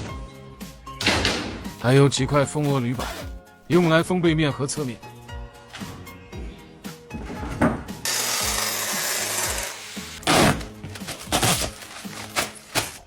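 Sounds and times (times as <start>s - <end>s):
power tool cutting panel: 8.1s - 10.6s.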